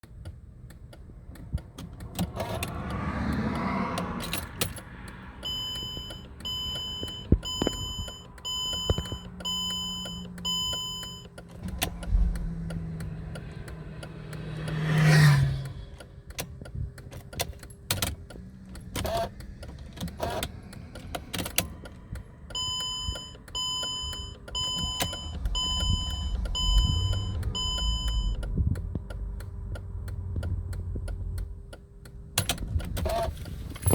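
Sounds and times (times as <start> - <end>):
sharp clicks: 0.0 - 33.3
vehicle passing close by: 1.9 - 5.6, 11.6 - 16.3, 24.9 - 28.6
car warning chime beeping: 5.2 - 16.8, 21.6 - 29.9.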